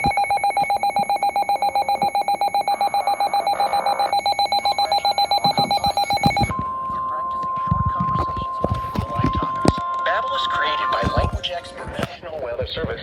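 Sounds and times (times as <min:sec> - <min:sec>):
rapid electronic alert beeping: 0:00.0 - 0:06.5.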